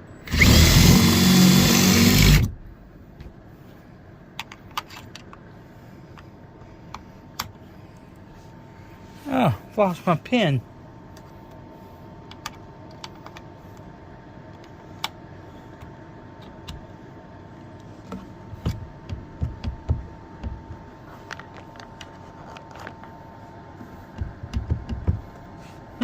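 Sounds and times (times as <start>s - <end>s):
dull knocks and thumps: 18.1s - 20.8s, 24.1s - 25.4s.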